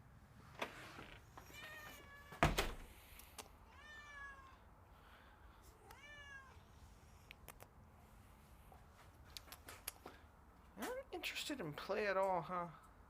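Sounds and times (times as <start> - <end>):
cat meowing: 1.4 - 2.4, 3.7 - 4.6, 5.8 - 6.7
faint clicks: 7.3 - 7.7.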